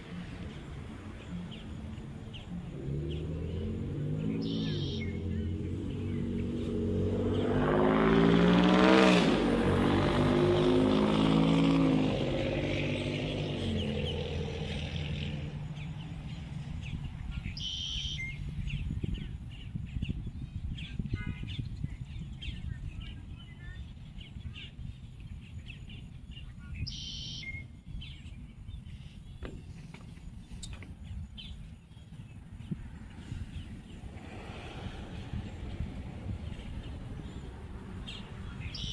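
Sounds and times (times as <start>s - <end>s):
vehicle driving past: 0.0s - 18.8s, 32.7s - 38.9s
low traffic rumble: 0.0s - 38.9s
bird short high call: 4.4s - 5.2s, 17.5s - 18.4s, 26.7s - 27.7s.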